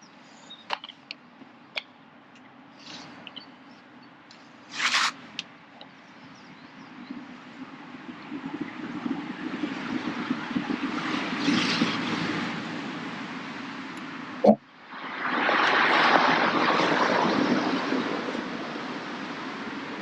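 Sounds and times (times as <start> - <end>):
rustling scrape: 4.7 - 5.2
aircraft engine passing over: 4.7 - 20.0.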